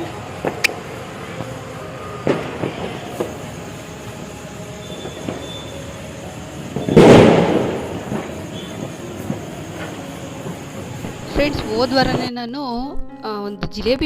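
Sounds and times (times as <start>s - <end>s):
firecracker burst: 2.2s - 12.3s.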